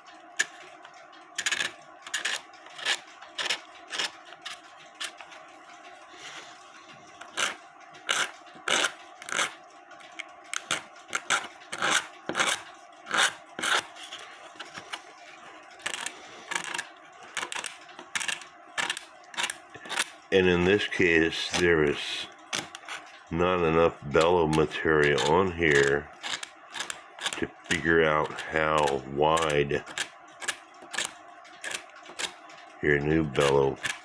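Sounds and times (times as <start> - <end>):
knife blade scraping: 25.0 - 32.3.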